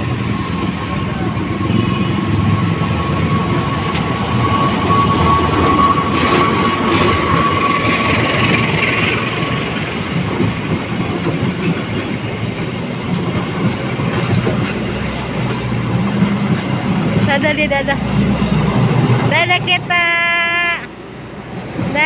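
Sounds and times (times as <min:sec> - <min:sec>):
train wheels rumbling on rails: 0:00.0 - 0:22.0
high-pitched whine: 0:00.2 - 0:09.4.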